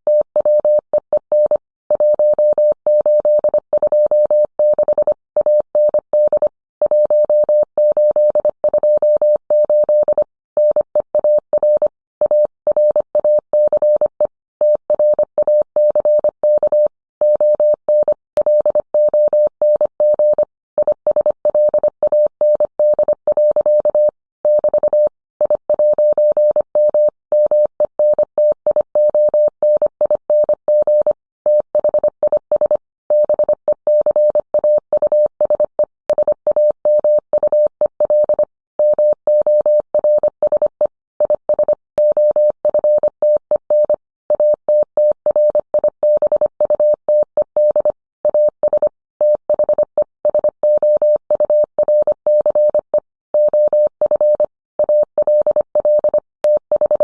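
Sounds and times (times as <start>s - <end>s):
morse code tone: 35.0s - 57.0s.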